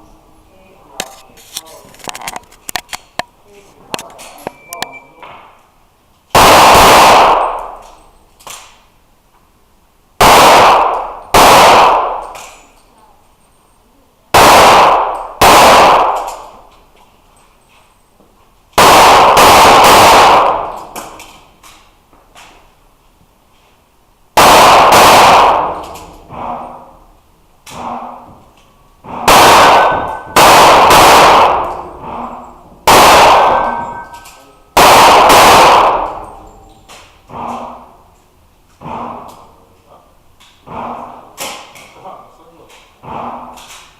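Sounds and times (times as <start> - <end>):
pistol shots echoing indoors: 6.3 - 9.0, 10.2 - 12.9, 14.3 - 17.0, 18.7 - 22.7, 24.4 - 38.1.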